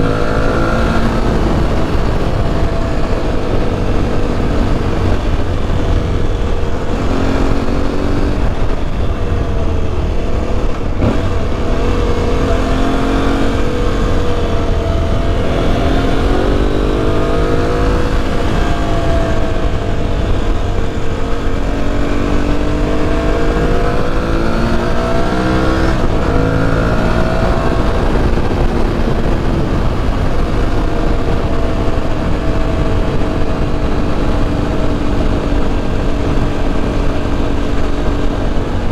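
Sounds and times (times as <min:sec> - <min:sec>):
motorcycle engine running: 0:00.0 - 0:38.9
wind and road noise: 0:00.0 - 0:38.9.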